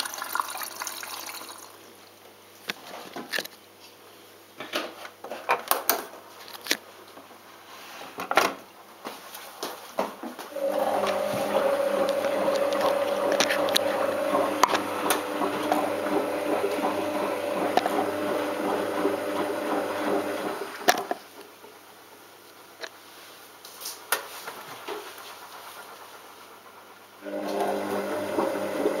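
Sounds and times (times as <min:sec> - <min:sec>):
washing machine hum: 0:00.0 - 0:01.8, 0:10.4 - 0:21.4, 0:24.3 - 0:29.0.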